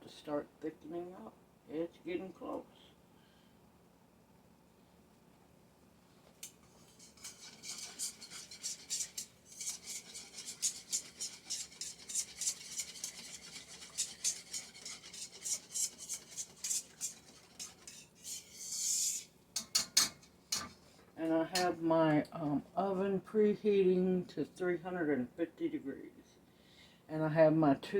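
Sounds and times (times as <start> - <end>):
utensil scraping a wok: 6.6 - 21.1.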